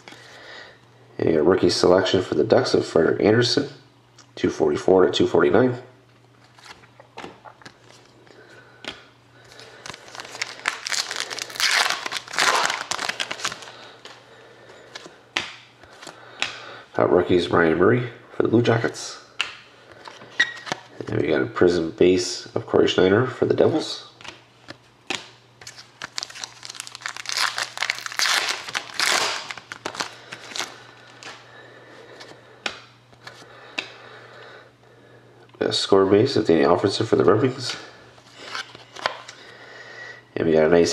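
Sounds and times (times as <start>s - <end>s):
wrapper crinkling and tearing: 9.5s - 13.8s, 25.6s - 31.2s.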